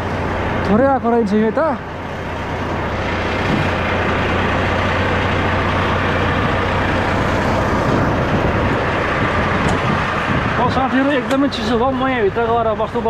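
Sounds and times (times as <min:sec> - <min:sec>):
diesel truck engine idling: 0:00.0 - 0:13.0
wind noise on microphone: 0:03.4 - 0:03.8, 0:07.6 - 0:11.0.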